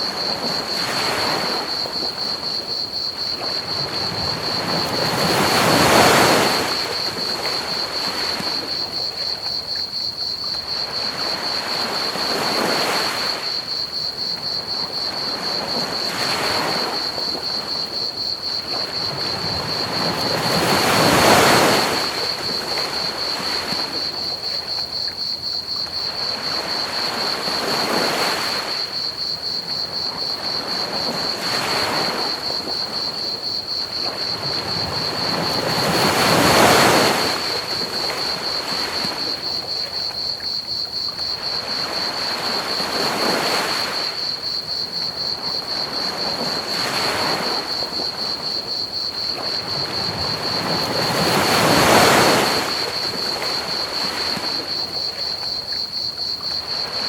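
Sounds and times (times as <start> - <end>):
ocean waves breaking: 0.0 - 8.8, 18.7 - 24.4, 30.3 - 39.7, 41.4 - 55.8
crickets chirping: 0.0 - 57.0.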